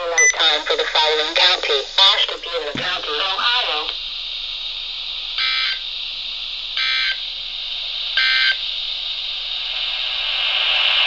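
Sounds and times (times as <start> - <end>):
steady hiss: 0.0 - 11.0
buzzy data burst warble: 5.4 - 5.9, 6.7 - 10.5.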